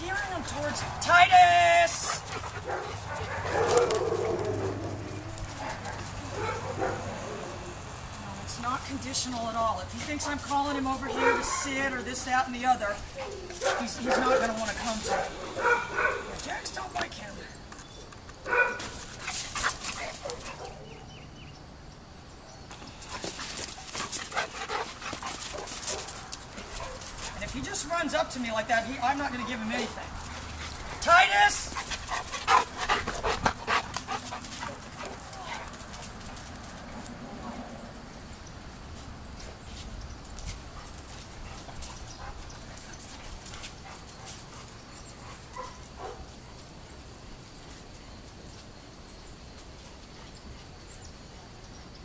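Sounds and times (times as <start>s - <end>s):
scuffling noises: 0.0s - 7.0s, 12.9s - 17.1s, 22.7s - 37.2s, 38.8s - 46.7s.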